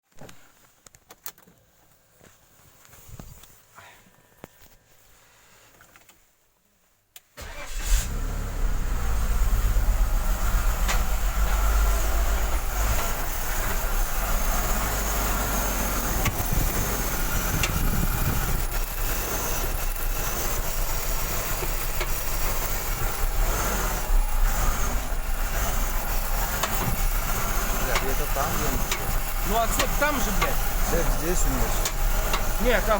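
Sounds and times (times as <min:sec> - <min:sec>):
car engine idling roughly: 0:08.8 - 0:32.9
engine knock: 0:09.2 - 0:32.9.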